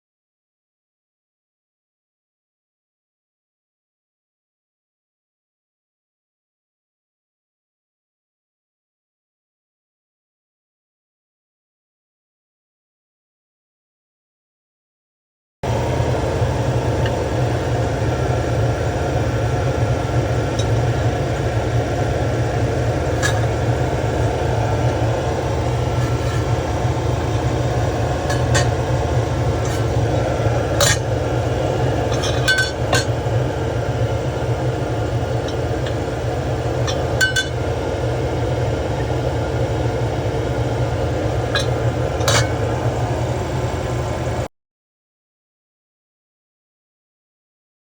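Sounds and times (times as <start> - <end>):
machine hum: 15.6 - 44.5
faint held tone: 15.7 - 44.4.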